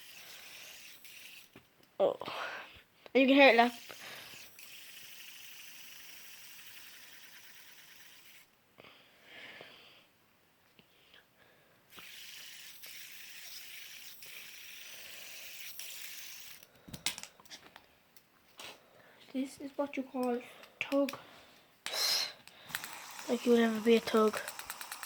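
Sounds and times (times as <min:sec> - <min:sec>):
fidget spinner whirring: 0:00.0 - 0:01.6, 0:03.3 - 0:08.5, 0:11.9 - 0:17.2, 0:21.9 - 0:25.0.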